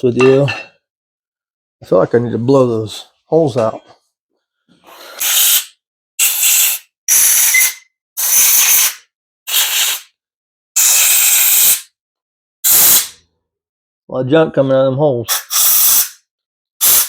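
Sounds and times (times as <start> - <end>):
air blow gun hissing: 5.2 - 10.1, 10.8 - 11.8, 15.3 - 16.2.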